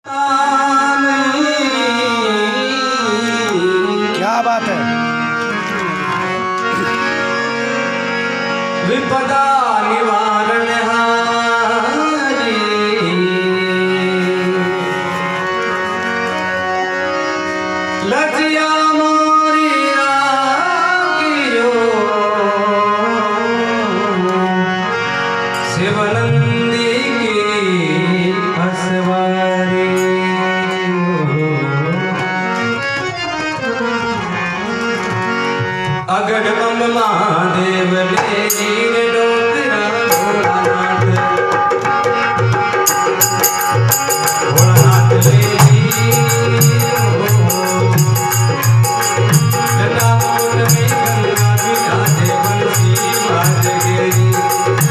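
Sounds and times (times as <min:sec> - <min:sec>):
man singing: 0:00.0 - 0:05.2, 0:08.7 - 0:15.8, 0:18.0 - 0:25.0, 0:25.6 - 0:32.3, 0:35.8 - 0:54.9
reed-organ drone: 0:01.5 - 0:09.2
jingling percussion: 0:14.1 - 0:16.8, 0:38.2 - 0:39.0, 0:40.1 - 0:54.9
hand drums: 0:40.1 - 0:54.9.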